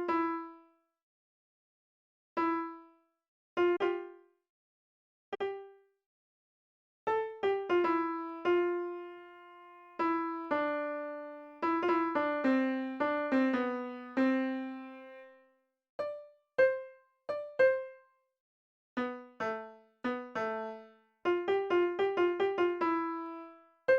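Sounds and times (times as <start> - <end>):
slow piano melody: 7.6 - 15.3.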